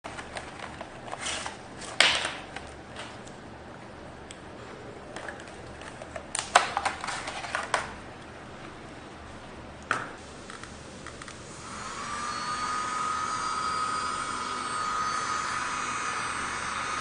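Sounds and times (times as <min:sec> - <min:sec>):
rustling of handling: 0:00.1 - 0:03.4, 0:05.1 - 0:08.0.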